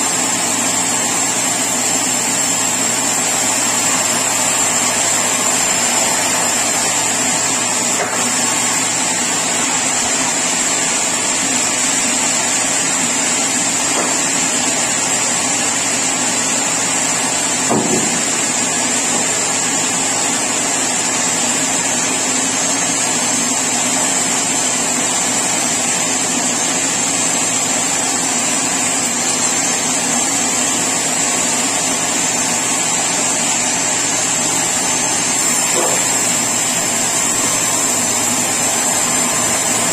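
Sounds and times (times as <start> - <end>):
sawmill machinery running: 0.0 - 39.9
brief knock: 17.7 - 18.2.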